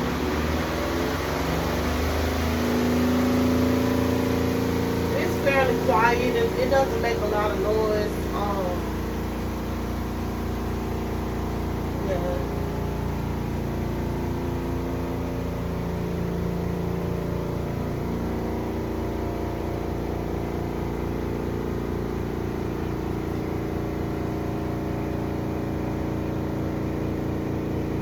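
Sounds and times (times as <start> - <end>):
spin dryer motor hum: 0.0 - 28.0.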